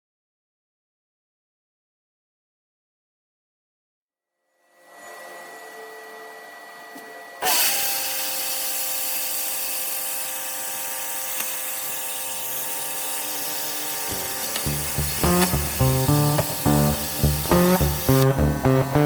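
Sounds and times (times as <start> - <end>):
plasma cutter hissing: 7.4 - 18.5
guitar music: 14.6 - 19.0.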